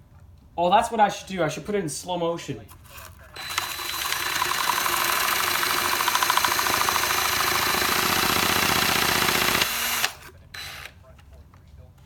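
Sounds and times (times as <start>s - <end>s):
plastic parts rattling under drill: 3.4s - 10.7s.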